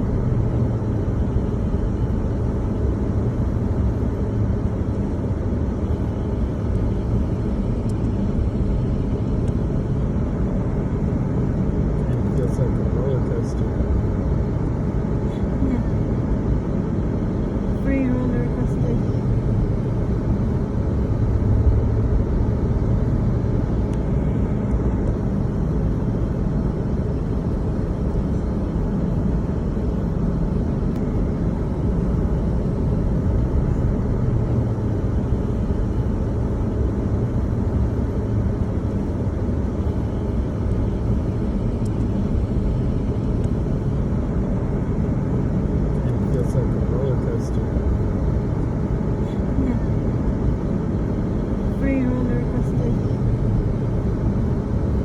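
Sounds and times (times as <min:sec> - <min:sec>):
car engine and tyre rumble: 0:00.0 - 0:55.0.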